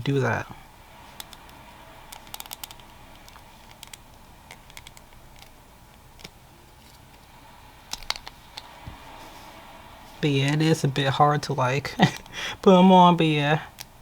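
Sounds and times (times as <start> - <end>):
plastic parts clicking: 1.2 - 6.4.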